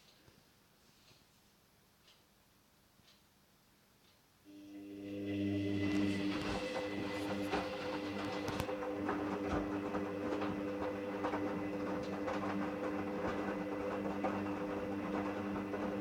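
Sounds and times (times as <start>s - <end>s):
washing machine motor hum: 4.5s - 16.0s
clicks and rattles of drum: 6.0s - 16.0s.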